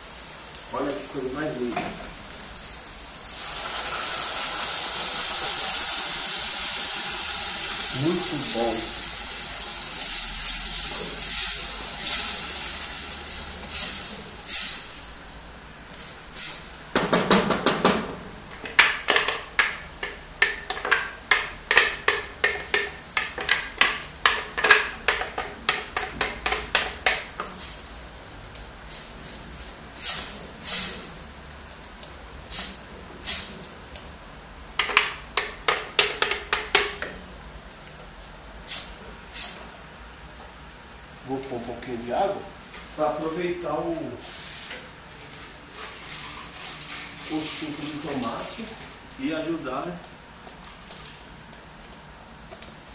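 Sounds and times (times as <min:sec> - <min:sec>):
meat sizzling in a pan: 0:00.0 - 0:17.0.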